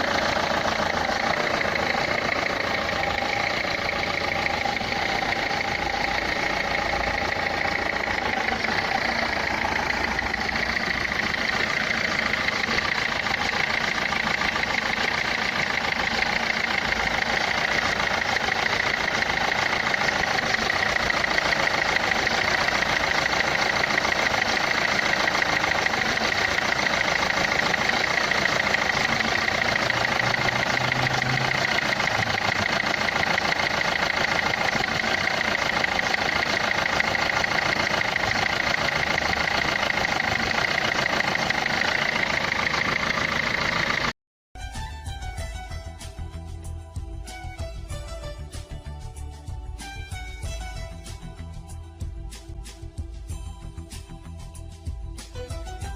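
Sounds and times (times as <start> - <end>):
diesel engine idling: 0.0 - 44.2.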